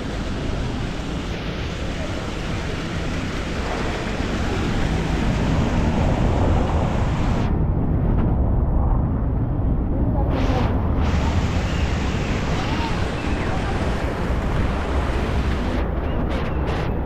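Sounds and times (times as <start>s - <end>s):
city street noise: 0.0s - 8.1s, 9.7s - 17.0s
wind rumbling on microphone: 0.0s - 17.0s.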